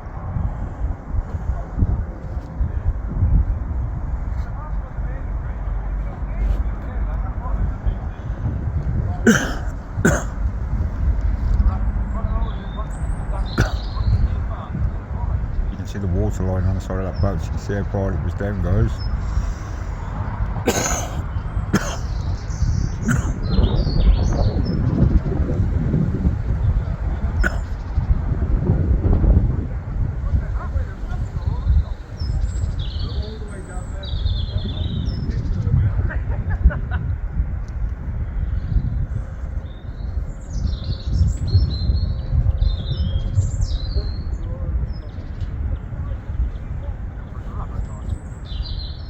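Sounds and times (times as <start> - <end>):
steady low rumble: 0.0 - 49.0
person coughing: 9.2 - 10.4, 13.6 - 13.9, 20.7 - 22.1, 23.0 - 23.4, 27.4 - 27.7
small birds chirping: 9.3 - 25.7, 26.4 - 28.2, 31.0 - 36.0, 38.3 - 49.0.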